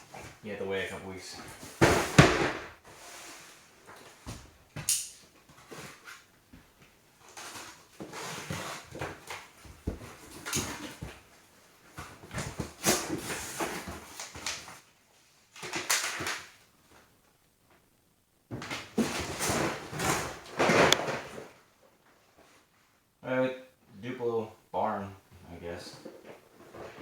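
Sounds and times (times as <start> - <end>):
cardboard boxes rustling and scraping: 1.4 - 4.6, 5.4 - 6.3, 7.2 - 14.8, 18.5 - 21.6, 26.0 - 27.0.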